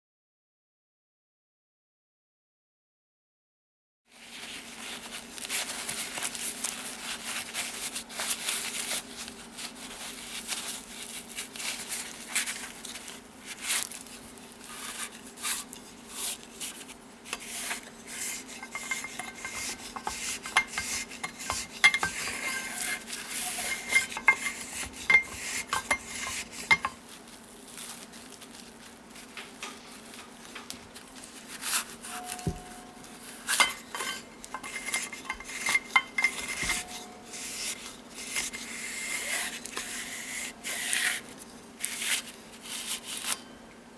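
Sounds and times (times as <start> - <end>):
steady low hum: 12.1 - 42.6
metal parts clinking and scraping: 17.3 - 27.0, 31.6 - 38.6.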